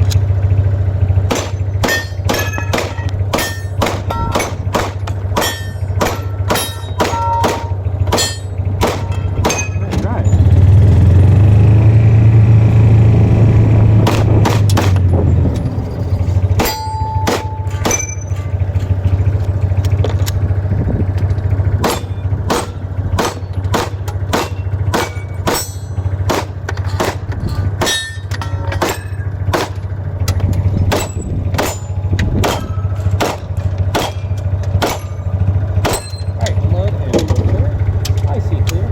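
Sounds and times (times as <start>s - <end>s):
vehicle engine humming: 0.0s - 38.9s
steel targets ringing: 1.2s - 10.6s, 14.6s - 19.8s, 21.7s - 36.7s
handgun shots: 1.3s - 9.6s, 32.4s - 34.2s, 34.8s - 35.2s.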